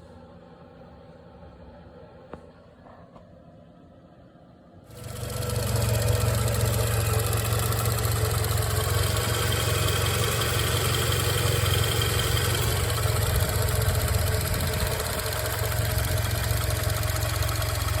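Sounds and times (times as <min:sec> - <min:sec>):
car engine idling: 0:05.0 - 0:18.0.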